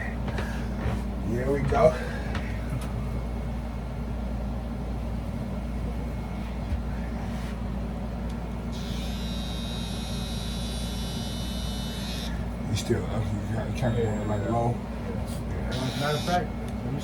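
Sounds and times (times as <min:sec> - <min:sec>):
thin high buzz: 0:08.7 - 0:12.5, 0:15.7 - 0:16.5.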